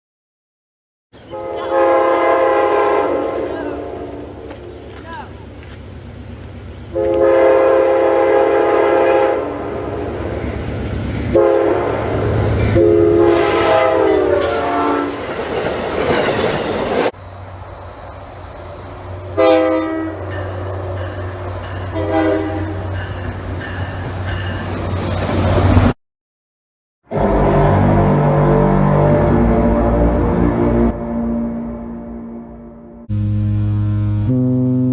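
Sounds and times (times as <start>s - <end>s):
rush of passing rail cars: 1.2s - 26.0s
train air horn blasts: 1.3s - 4.5s, 6.9s - 9.8s, 11.3s - 15.2s, 19.4s - 20.8s, 21.9s - 22.9s, 27.1s - 32.4s, 33.1s - 34.9s.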